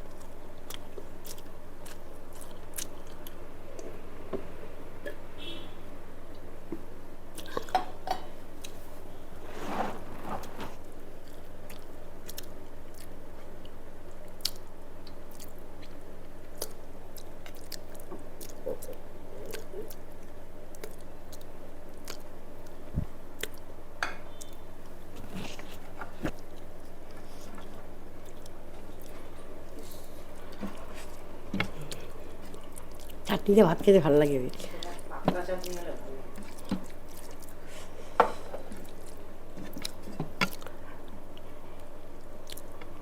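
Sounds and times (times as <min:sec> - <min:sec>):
steady low hum: 0:00.0 - 0:43.0
person chewing: 0:00.2 - 0:03.9, 0:16.6 - 0:22.8, 0:25.2 - 0:33.3, 0:35.6 - 0:41.5, 0:42.4 - 0:42.9.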